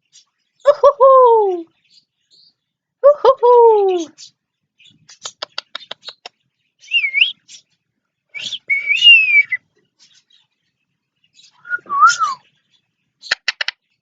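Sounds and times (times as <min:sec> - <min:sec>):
parrot clicking: 0:05.2 - 0:06.3, 0:13.3 - 0:13.8.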